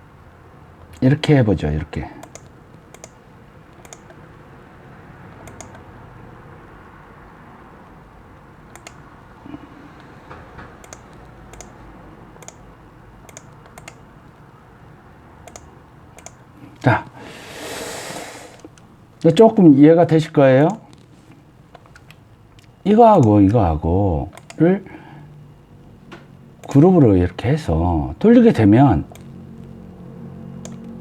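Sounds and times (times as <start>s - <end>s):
low background hiss: 0.0s - 10.2s, 10.8s - 31.0s
faint light clicks: 8.7s - 9.0s.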